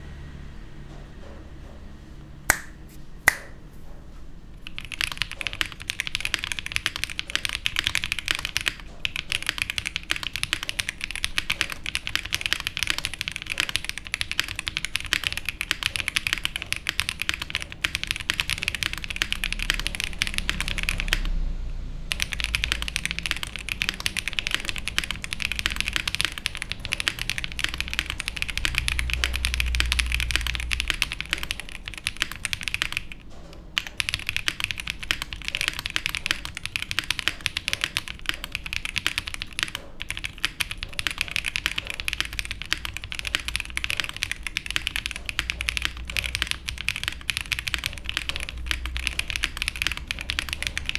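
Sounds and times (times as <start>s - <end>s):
sharp single clicks: 2.5s - 3.6s
mechanical keyboard typing: 4.6s - 21.4s, 22.1s - 50.9s.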